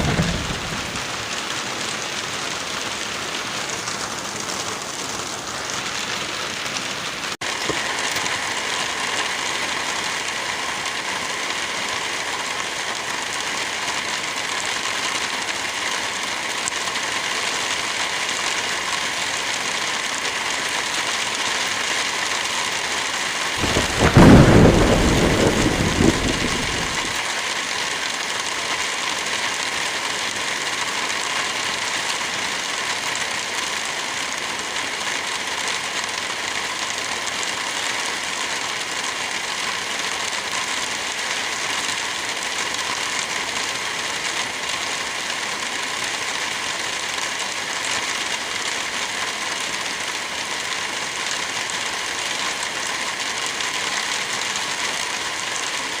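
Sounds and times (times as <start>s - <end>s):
low roll of thunder: 0.0s - 1.5s, 23.6s - 27.2s
steady rain falling: 0.0s - 56.0s.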